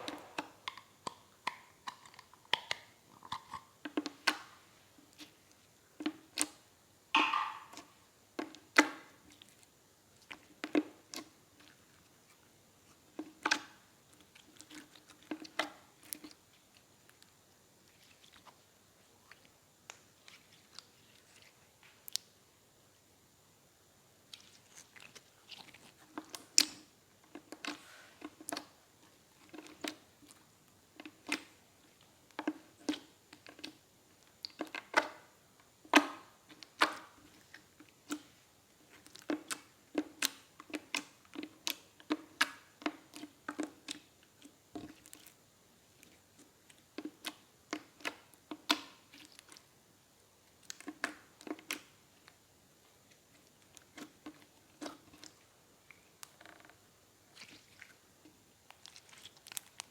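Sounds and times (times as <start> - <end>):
slime squeezed with wet clicks: 35.9 - 37.4.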